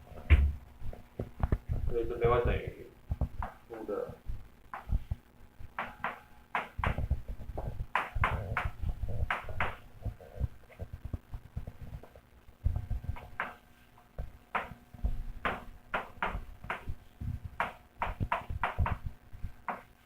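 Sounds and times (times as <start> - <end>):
pen tapping on hard desk: 7.9 - 9.8, 15.4 - 16.9, 17.6 - 19.1.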